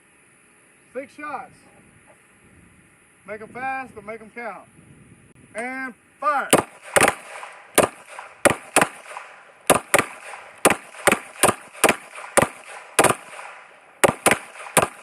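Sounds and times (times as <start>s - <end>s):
pistol shots with echo: 6.5s - 15.0s.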